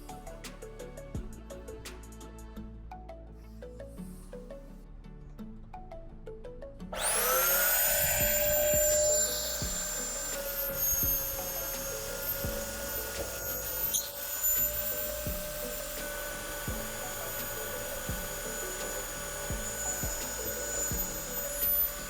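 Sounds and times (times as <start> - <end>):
music with slow beat: 0.0 - 22.0
steady hum: 7.0 - 22.0.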